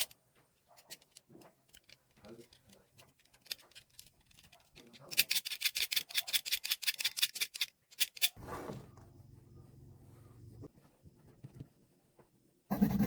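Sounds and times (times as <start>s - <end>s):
low steady hum: 8.4s - 12.6s.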